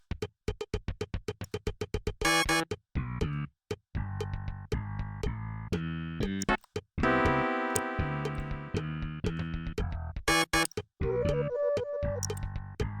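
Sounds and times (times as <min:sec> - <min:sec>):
short clicky synth hits: 0:12.2 - 0:12.5.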